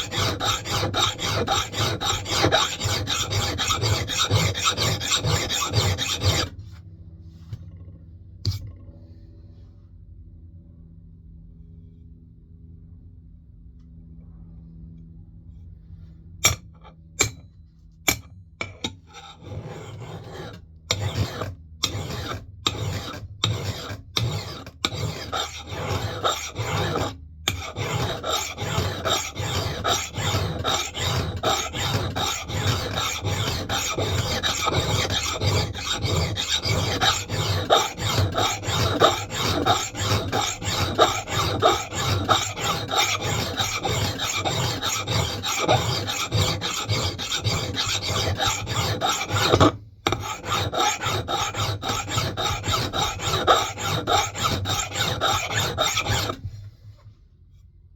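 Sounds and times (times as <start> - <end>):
file sharpening axe blade: 0.0 - 6.5, 18.1 - 56.4.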